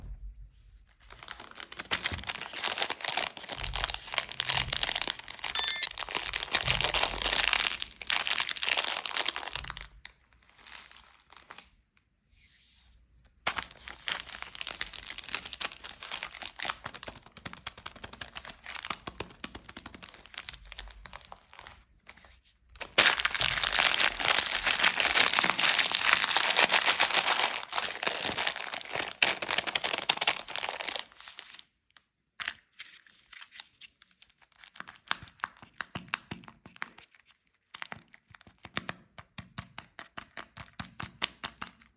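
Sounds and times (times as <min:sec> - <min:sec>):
candy wrappers crinkling and tearing: 0:01.0 - 0:11.8, 0:13.5 - 0:21.8, 0:22.8 - 0:31.7, 0:34.2 - 0:38.7.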